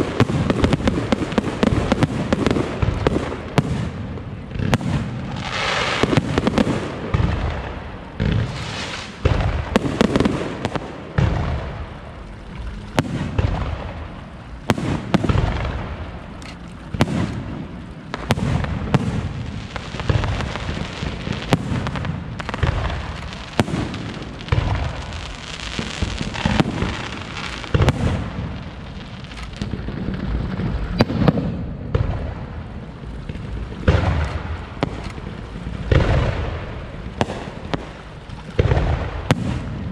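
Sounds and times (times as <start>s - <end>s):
fireworks booming: 0.0s - 39.9s
fireworks crackling: 0.0s - 39.9s.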